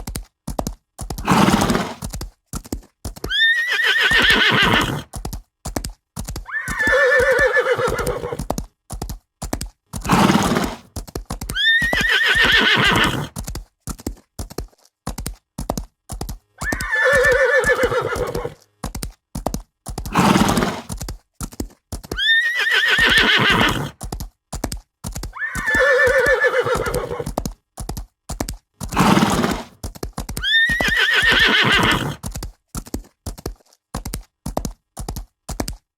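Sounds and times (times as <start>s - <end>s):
clip-clop of hooves: 0.0s - 35.9s
horse whinnying: 1.2s - 2.0s, 3.2s - 5.1s, 6.5s - 8.5s, 10.0s - 10.8s, 11.5s - 13.4s, 16.6s - 18.6s, 20.1s - 20.9s, 22.1s - 24.0s, 25.3s - 27.4s, 28.9s - 29.7s, 30.4s - 32.2s
horse snorting: 1.2s - 2.1s, 3.6s - 5.1s, 10.0s - 10.9s, 11.6s - 13.4s, 16.6s - 18.6s, 20.0s - 21.0s, 22.5s - 24.0s, 28.8s - 29.8s, 30.4s - 32.3s.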